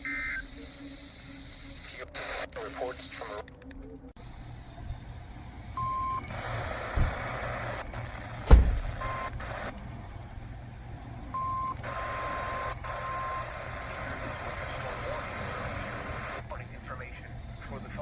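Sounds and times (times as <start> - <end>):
radio static hiss: 0.4 - 3.4, 6.1 - 10.0, 11.7 - 18.0
sharp thump: 8.5 - 9.0.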